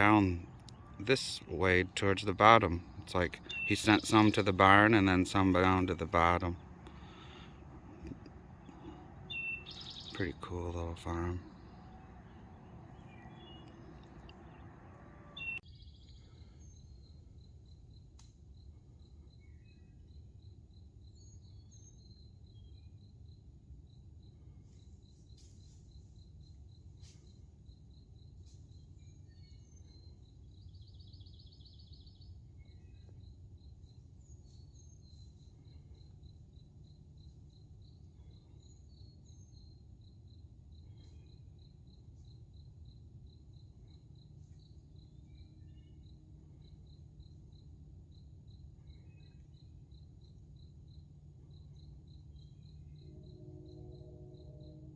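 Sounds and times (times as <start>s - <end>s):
bird chirps: 0.0s - 17.3s, 28.7s - 36.4s
low rumble: 6.5s - 15.6s
insect chirping rapidly: 8.4s - 14.8s, 16.7s - 54.9s.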